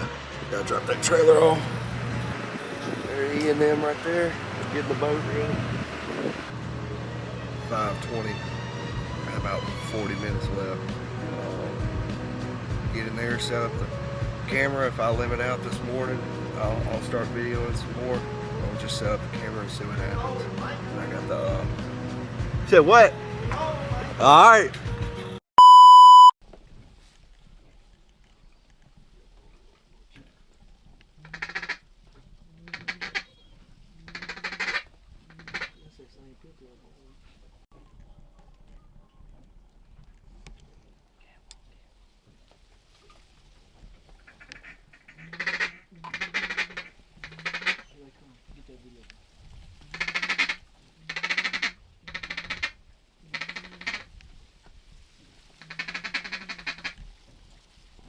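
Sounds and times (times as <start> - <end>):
raspy duck quacks: 31.2 - 31.8, 32.7 - 33.3, 34.1 - 35.8, 44.4 - 47.9, 49.9 - 54.1, 55.6 - 57.0.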